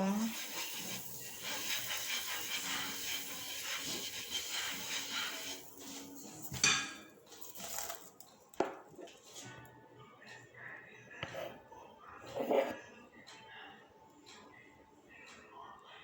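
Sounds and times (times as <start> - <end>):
faint music: 0.0 - 16.0
utensil clattering against pan: 0.4 - 8.2.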